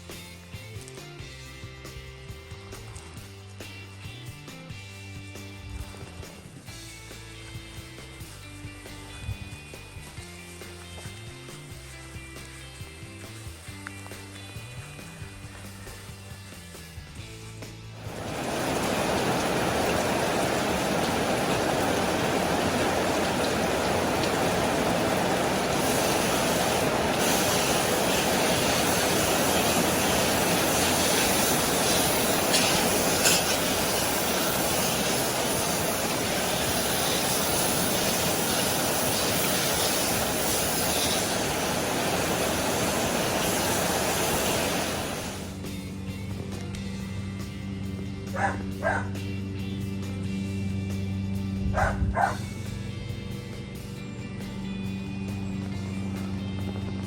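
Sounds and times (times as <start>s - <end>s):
steady rushing noise: 18.0s - 46.6s.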